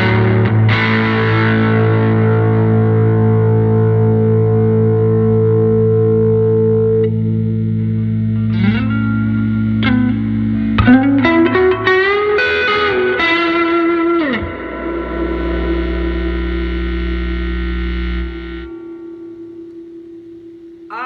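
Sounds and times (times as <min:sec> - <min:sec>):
electric guitar with driven tone: 0:00.0 - 0:21.0.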